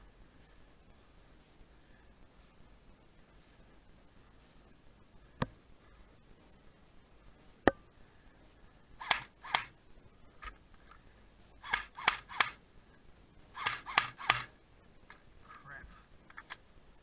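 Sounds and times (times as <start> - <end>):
airsoft guns firing: 9.0 - 9.7, 11.6 - 12.6, 13.6 - 14.5.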